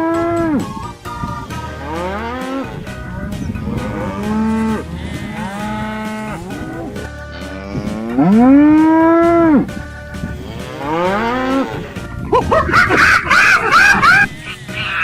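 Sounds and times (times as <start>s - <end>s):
cattle mooing: 0.0s - 9.7s, 10.4s - 12.0s.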